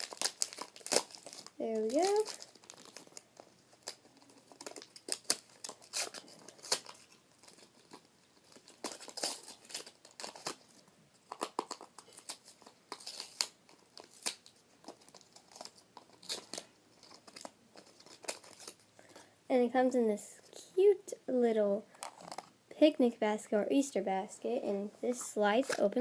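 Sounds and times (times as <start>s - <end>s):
packaging crinkling and tearing: 0.0s - 19.3s.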